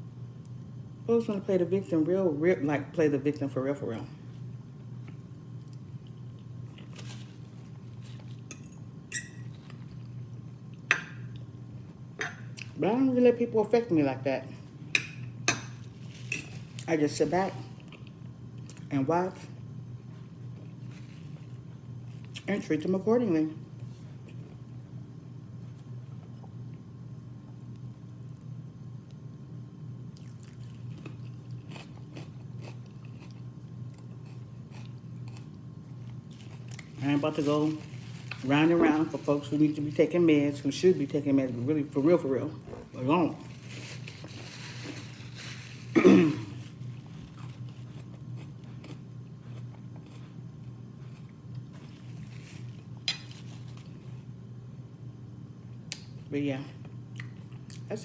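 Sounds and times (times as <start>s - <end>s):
steady low hum: 0.0s - 58.0s
chewing and crunchy bites: 30.2s - 38.5s, 42.6s - 54.0s.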